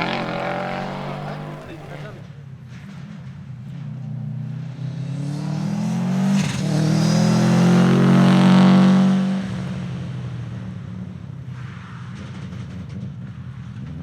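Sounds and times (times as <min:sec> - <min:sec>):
rally car engine passing: 0:00.0 - 0:02.2.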